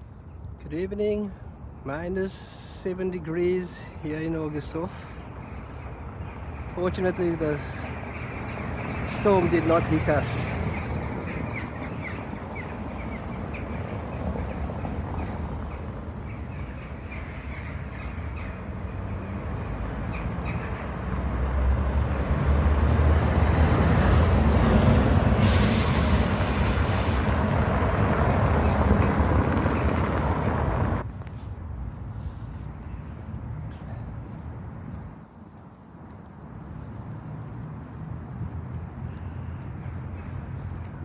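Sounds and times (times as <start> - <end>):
road traffic passing: 0.0 - 41.0
heavy vehicle rumbling by: 21.0 - 31.0
sharp hiss: 25.4 - 27.3.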